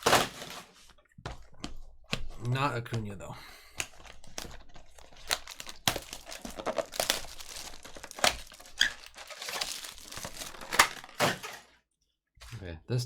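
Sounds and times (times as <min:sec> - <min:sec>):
foil wrappers crinkling and tearing: 0:00.0 - 0:01.0, 0:03.7 - 0:11.7.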